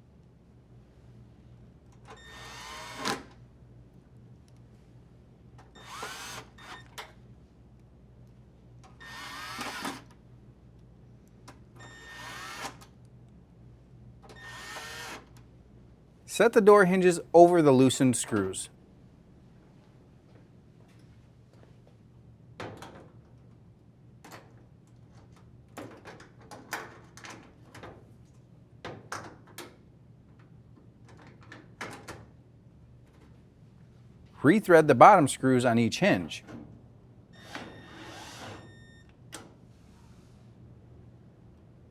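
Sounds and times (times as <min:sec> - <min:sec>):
drill driver running screws: 0:02.2 - 0:03.2, 0:05.8 - 0:07.0, 0:09.0 - 0:10.1, 0:11.9 - 0:12.8, 0:14.4 - 0:15.3, 0:37.4 - 0:38.6.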